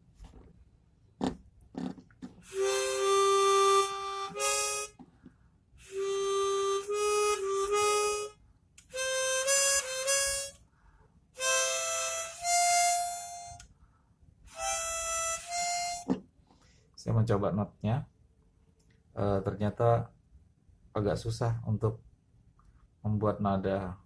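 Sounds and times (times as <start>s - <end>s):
chromatic harmonica playing: 2.4s - 5.0s, 5.8s - 10.6s, 11.4s - 13.7s, 14.5s - 16.1s.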